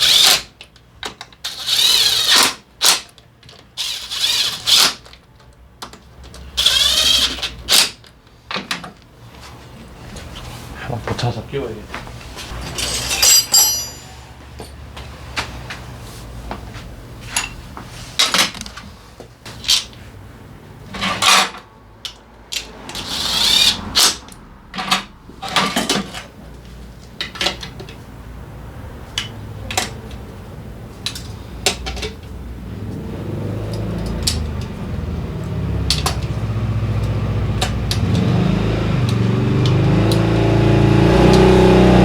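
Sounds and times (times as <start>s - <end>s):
metal scraping: 12.4s - 14.4s
metal parts clinking and knocking: 12.6s - 14.8s.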